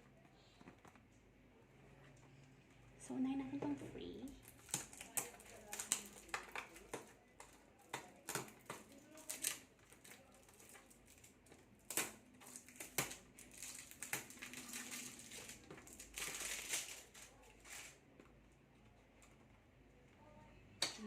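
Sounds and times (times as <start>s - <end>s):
plastic packaging crinkling: 4.3s - 18.1s.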